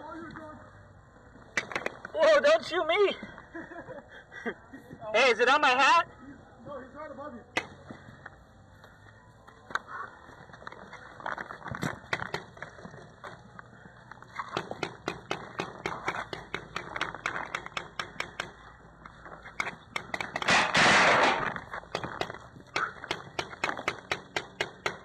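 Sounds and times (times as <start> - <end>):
paintball markers firing: 11.9 - 12.9, 14.4 - 18.6, 19.5 - 25.0.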